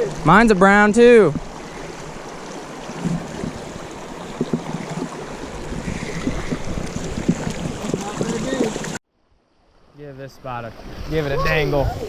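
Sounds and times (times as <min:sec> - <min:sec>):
stream rushing over rocks: 0:00.0 - 0:09.0.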